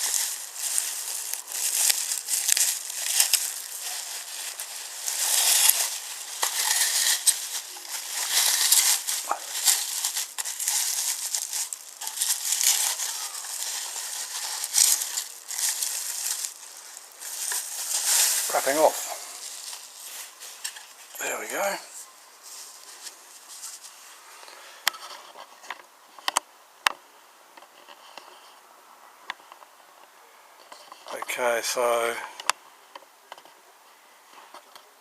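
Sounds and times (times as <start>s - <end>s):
wrapping crinkling: 0.0s - 24.0s.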